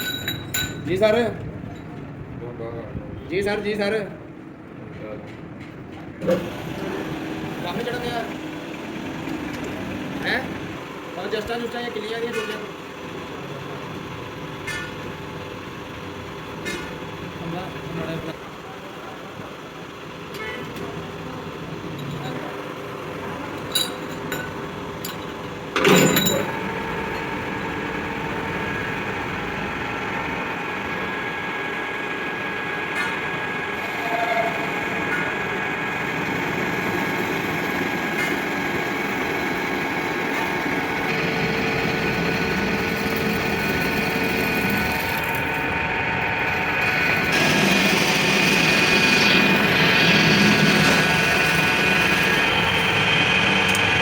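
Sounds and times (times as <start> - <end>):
metal lathe running: 6.2 - 18.5, 19.6 - 54.0
sharp metal clank: 25.8 - 26.6.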